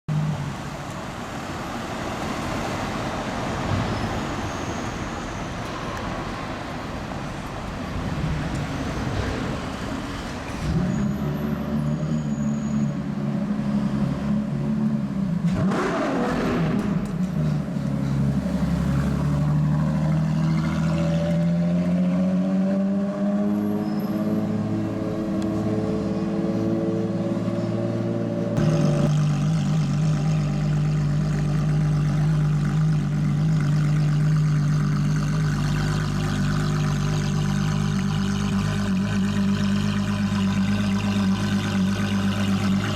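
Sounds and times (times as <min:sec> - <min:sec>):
street traffic noise: 0:00.1 - 0:42.9
sports car engine at low revs: 0:24.8 - 0:42.9.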